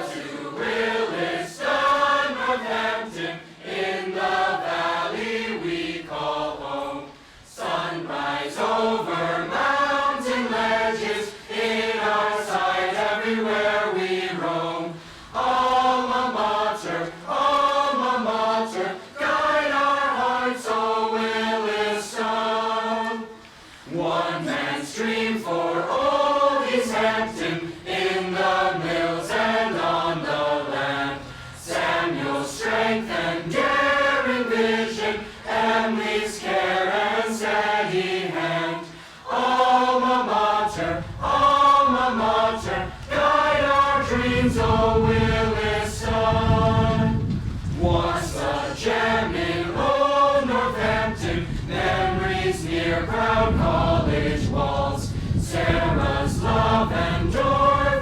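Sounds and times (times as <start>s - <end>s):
choir singing: 0.0s - 58.0s.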